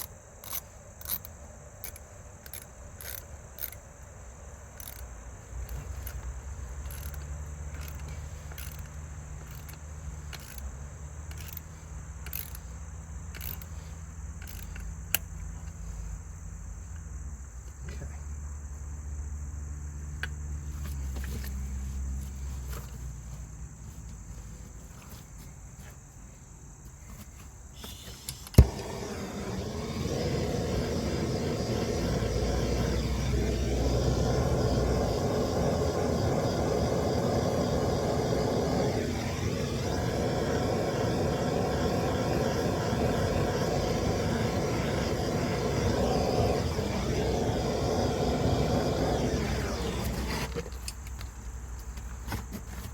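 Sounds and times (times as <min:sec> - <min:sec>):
engine starting and running: 0:27.8 - 0:51.3.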